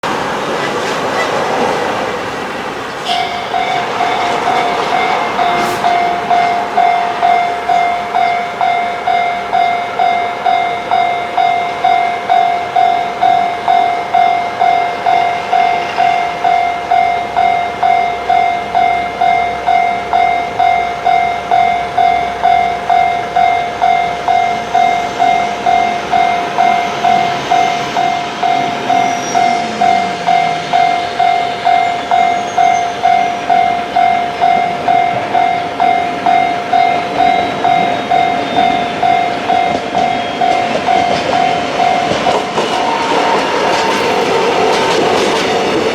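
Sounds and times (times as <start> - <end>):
level crossing warning bell: 1.6 - 45.9.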